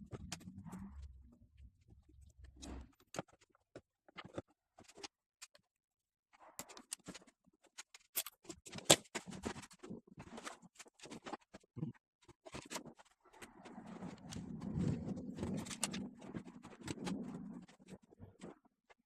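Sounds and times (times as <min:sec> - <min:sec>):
small objects clicking and knocking: 0:06.4 - 0:11.6, 0:12.2 - 0:18.7.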